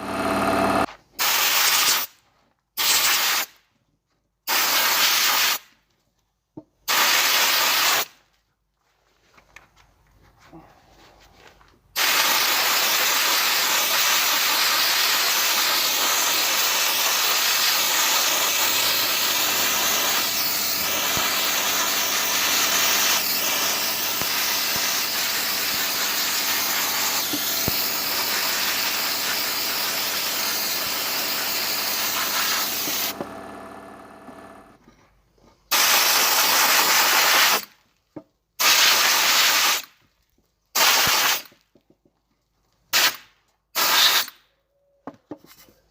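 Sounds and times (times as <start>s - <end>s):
compressed air hissing: 12.0s - 33.2s.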